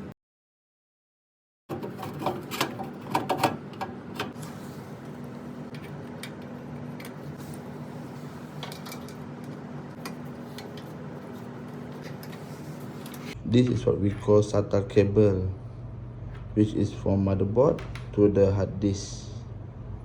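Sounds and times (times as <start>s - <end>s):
hard disk clicking and clattering: 1.7s - 4.4s
steady low hum: 1.8s - 20.0s.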